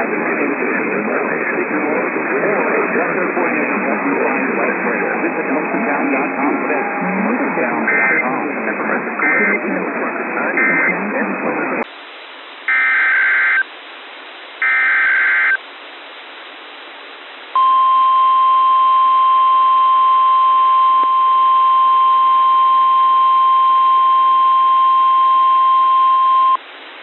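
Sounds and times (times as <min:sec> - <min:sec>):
radio hiss: 0:00.0 - 0:17.8
steady alarm tone: 0:07.0 - 0:08.2, 0:10.6 - 0:10.9, 0:12.7 - 0:13.6, 0:14.6 - 0:15.6.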